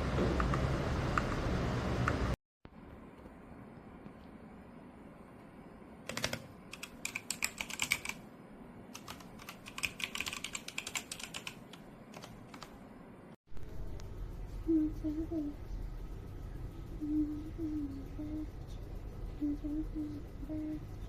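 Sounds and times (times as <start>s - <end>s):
mechanical keyboard key clicks: 6.1s - 8.2s, 9.0s - 12.7s.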